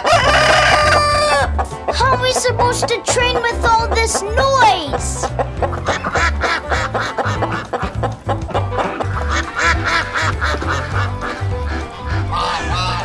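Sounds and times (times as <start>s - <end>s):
music with bass beat: 0.0s - 13.0s
rapid quacking: 0.0s - 13.0s.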